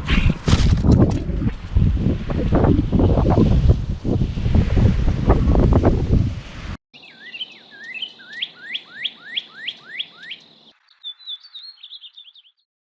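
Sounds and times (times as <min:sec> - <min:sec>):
high bird twittering: 0:07.0 - 0:12.6
songbird whistling rising notes: 0:07.0 - 0:12.6.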